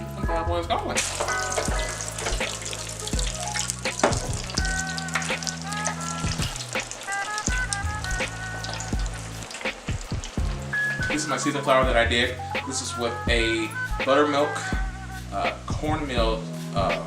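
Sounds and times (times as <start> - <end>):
oil sizzling and popping: 0.9 - 11.8.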